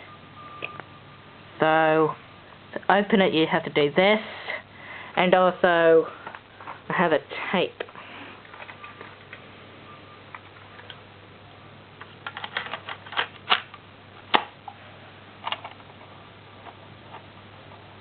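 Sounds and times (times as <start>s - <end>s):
cassette tape plastic clicks: 12.0s - 14.5s, 15.4s - 15.8s
cassette compartment snaps: 12.3s - 14.5s.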